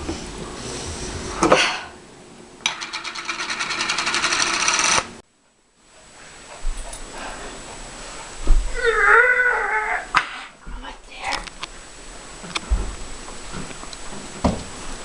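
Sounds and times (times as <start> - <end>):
small machine clattering: 2.6 - 5.1.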